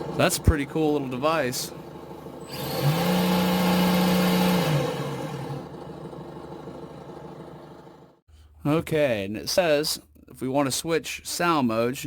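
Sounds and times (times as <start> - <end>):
simulated engine sound from speaker: 0.0 - 8.2.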